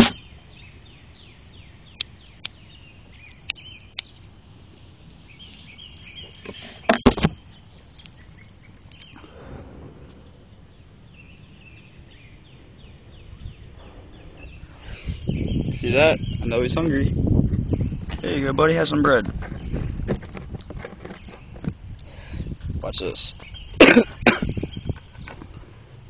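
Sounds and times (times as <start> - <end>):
loud handling noise: 0.0 - 0.2
high chirping: 10.2 - 19.9.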